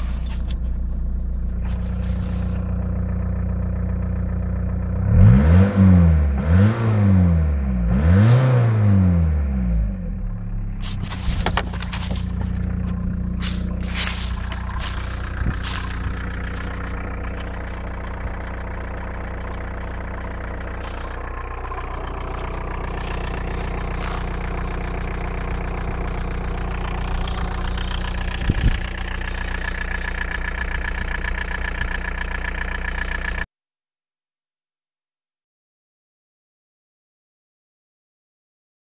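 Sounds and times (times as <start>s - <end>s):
engine ticking noise: 0.0s - 5.8s, 9.8s - 33.5s
diesel engine revving and idling: 0.0s - 33.5s.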